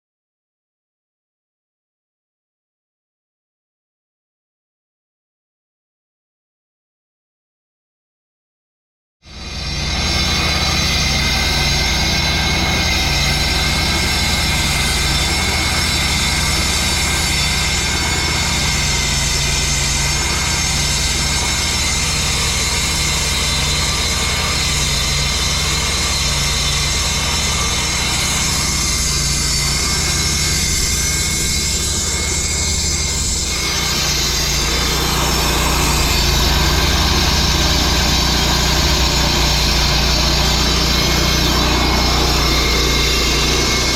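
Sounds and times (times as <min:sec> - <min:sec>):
concrete saw cutting: 0:09.2 - 0:43.9.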